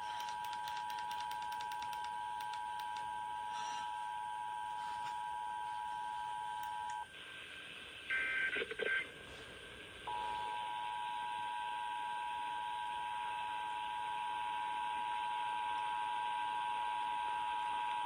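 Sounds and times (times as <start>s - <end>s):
radio hiss: 3.4s - 10.5s.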